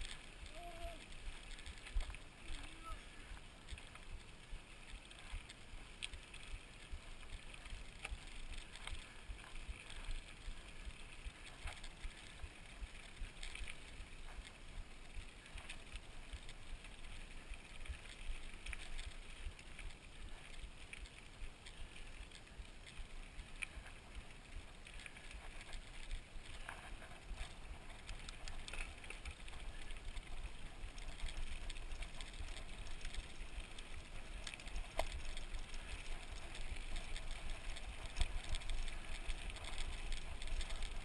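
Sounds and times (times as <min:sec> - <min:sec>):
bike clicks and rattles: 0:00.0 - 0:41.0
tyre and trail noise: 0:00.0 - 0:41.0.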